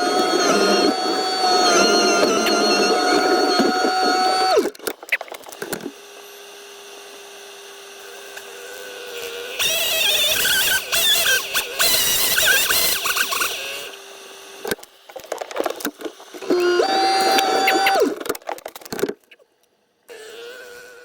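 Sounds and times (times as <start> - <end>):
machine noise with squeals: 0.0 - 7.0, 9.3 - 14.0, 16.3 - 18.2.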